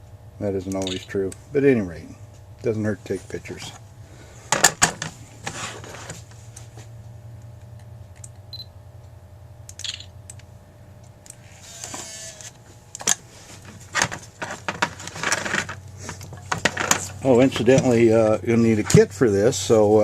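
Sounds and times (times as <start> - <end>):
small metal parts clicking: 0.7 - 1.2, 9.7 - 10.4.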